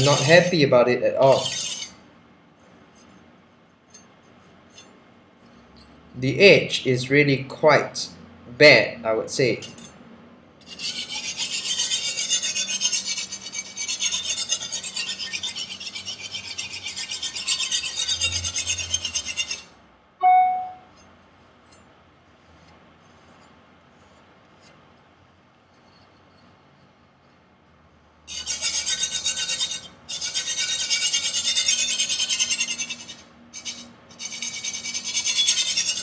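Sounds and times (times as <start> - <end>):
knife scraping on sharpening stone: 0.0 - 0.6, 1.2 - 2.0, 10.6 - 19.7, 28.3 - 36.0.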